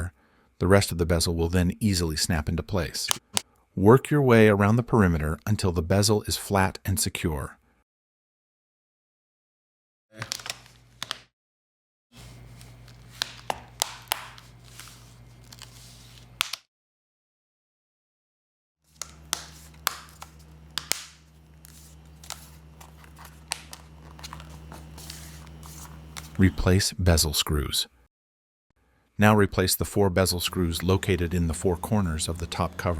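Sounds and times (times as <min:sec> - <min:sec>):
low electrical hum: 0:12.2 - 0:16.4, 0:18.9 - 0:28.0, 0:28.9 - 0:32.9
plastic clips snapping: 0:13.2 - 0:14.4, 0:16.4 - 0:16.6, 0:19.0 - 0:21.2.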